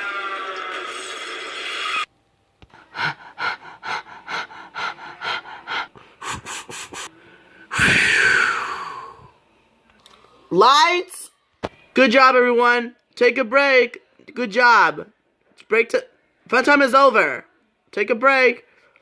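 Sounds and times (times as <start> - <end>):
person imitating steam engine chuffs: 2.9 - 7.1.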